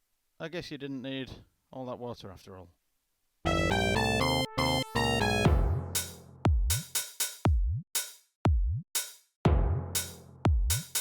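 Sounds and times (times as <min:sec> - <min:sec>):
synth chord: 0:03.5 - 0:06.0
drum-machine beat: 0:03.5 - 0:11.0.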